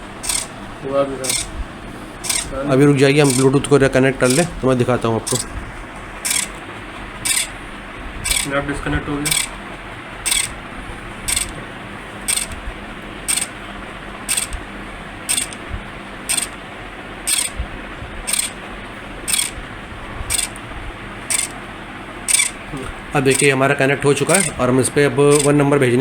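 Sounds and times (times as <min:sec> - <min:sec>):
servo motor gears whirring: 0:00.1 - 0:00.6, 0:01.2 - 0:01.6, 0:02.2 - 0:02.6, 0:03.2 - 0:03.6, 0:04.2 - 0:04.5, 0:05.2 - 0:05.6, 0:06.2 - 0:06.6, 0:07.2 - 0:07.6, 0:08.2 - 0:08.5, 0:09.2 - 0:09.5, 0:10.3 - 0:10.6, 0:11.3 - 0:11.6, 0:12.3 - 0:12.6, 0:13.3 - 0:13.5, 0:14.3 - 0:14.6, 0:15.3 - 0:15.6, 0:16.3 - 0:16.6, 0:17.3 - 0:17.6, 0:18.3 - 0:18.6, 0:19.3 - 0:19.6, 0:20.3 - 0:20.6, 0:21.3 - 0:21.6, 0:22.3 - 0:22.6, 0:23.2 - 0:23.6, 0:24.3 - 0:24.6, 0:25.3 - 0:25.6.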